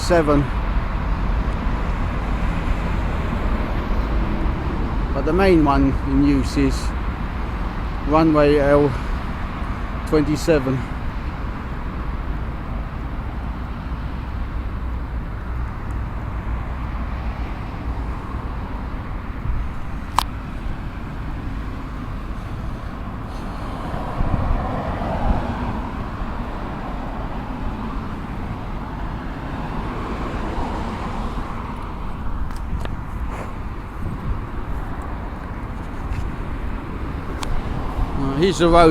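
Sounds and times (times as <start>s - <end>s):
distant road traffic rumble: 0.0s - 38.9s.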